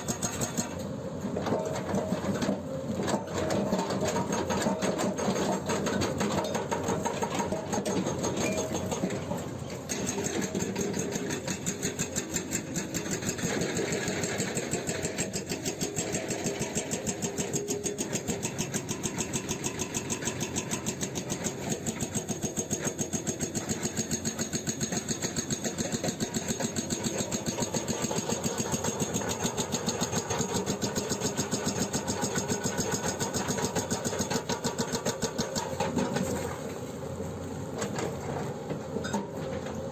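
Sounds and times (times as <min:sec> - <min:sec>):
hydraulic breaker pounding rock: 0:00.0 - 0:36.6.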